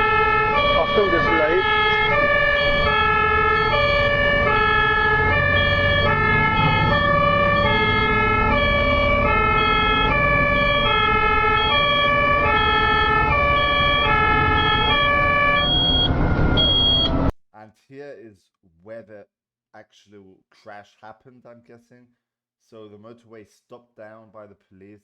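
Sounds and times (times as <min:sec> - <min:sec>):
two-tone ambulance siren: 0:00.0 - 0:17.3
vehicle and road rumble: 0:00.0 - 0:17.3.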